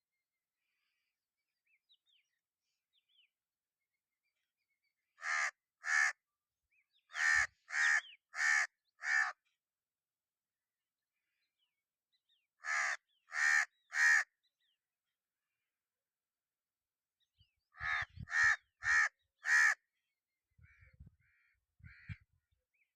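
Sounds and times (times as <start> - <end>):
crow cawing: 5.2 - 6.2, 7.1 - 9.4, 12.6 - 14.3, 17.8 - 19.8.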